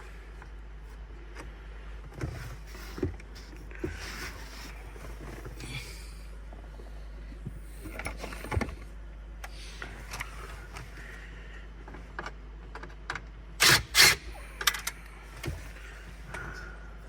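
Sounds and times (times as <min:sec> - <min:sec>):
short clattering bursts: 0:13.6 - 0:14.9.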